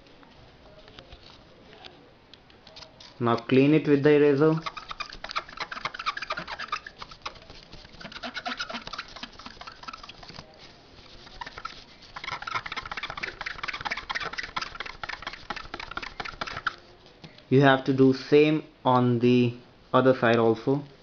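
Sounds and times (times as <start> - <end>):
eraser rubbing on metal contacts: 3.0 - 16.8.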